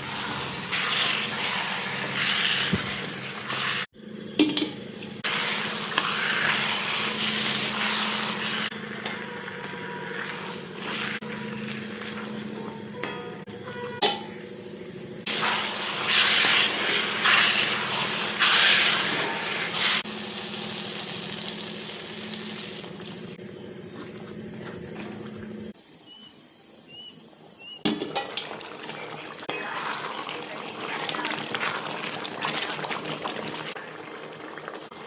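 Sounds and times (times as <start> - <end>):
water running: 15.3 - 25.8, 27.9 - 35.0.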